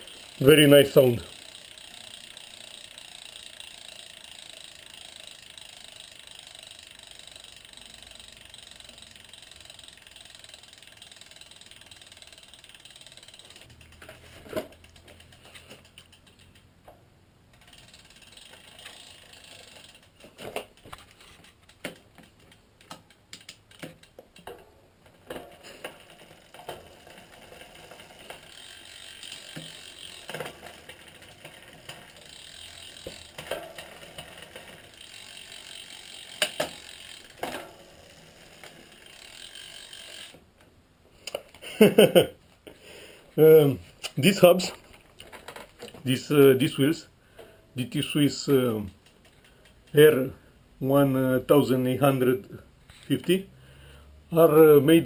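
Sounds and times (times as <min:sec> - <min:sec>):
freehub ratchet buzzing: 0:00.0 - 0:16.6, 0:17.5 - 0:24.5, 0:25.3 - 0:40.5.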